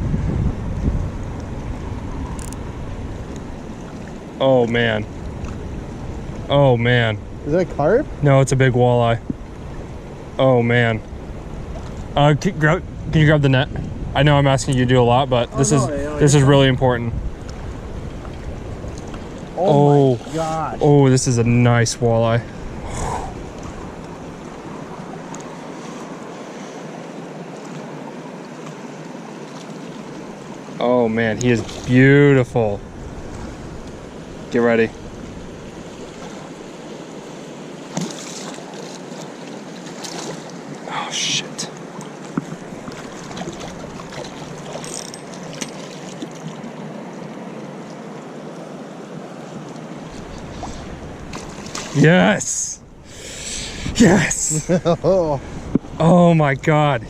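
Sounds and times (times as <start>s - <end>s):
wind on microphone: 0.0s - 4.1s, 11.0s - 19.6s, 50.1s - 56.0s
river water flowing: 0.6s - 57.0s.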